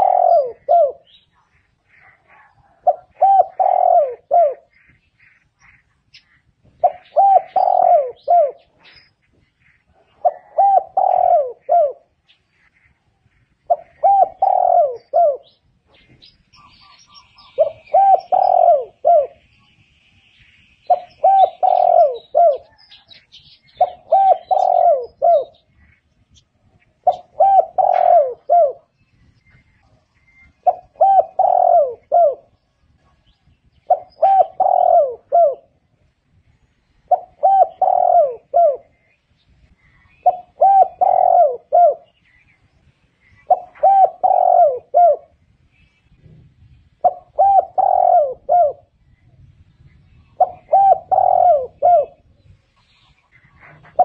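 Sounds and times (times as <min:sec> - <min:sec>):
dove cooing: 0:00.0 - 0:19.5, 0:20.9 - 0:26.0, 0:26.6 - 0:29.0, 0:29.8 - 0:36.1, 0:37.1 - 0:39.2, 0:39.8 - 0:42.4, 0:43.2 - 0:45.4, 0:47.0 - 0:49.2, 0:50.2 - 0:54.0
small bird chirping: 0:00.0 - 0:34.9.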